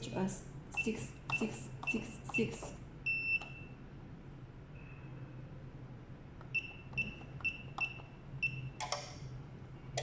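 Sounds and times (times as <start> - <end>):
keypad beeping: 0.8 - 3.7, 6.4 - 8.9.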